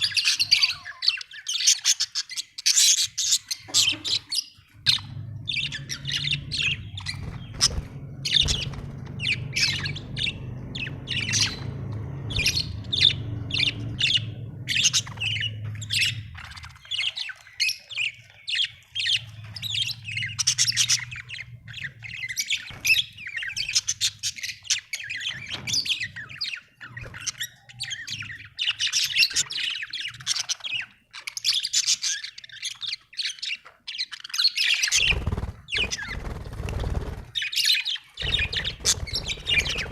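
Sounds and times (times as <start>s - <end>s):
budgerigars chirping and chattering: 0.0s - 39.9s.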